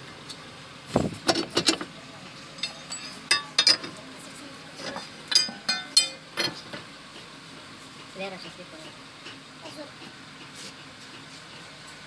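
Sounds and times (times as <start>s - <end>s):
tools clinking on car parts: 1.3s - 4.0s, 4.8s - 6.8s.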